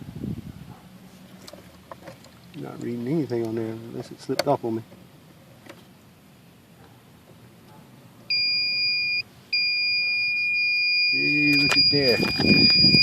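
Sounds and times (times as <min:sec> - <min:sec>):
multimeter high-pitched beep: 0:08.3 - 0:13.0.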